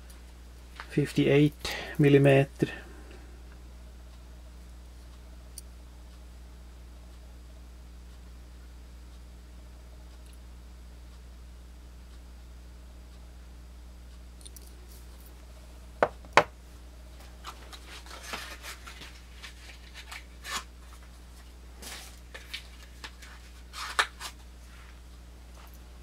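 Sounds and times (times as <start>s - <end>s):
rubbing of handled knives: 17.7s - 21.0s.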